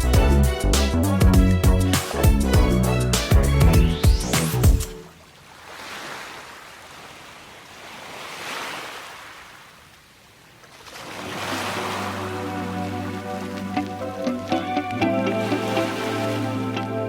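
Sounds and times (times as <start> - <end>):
music track: 0.0 - 5.0, 11.8 - 17.0
ocean waves washing onto beach: 4.9 - 17.0.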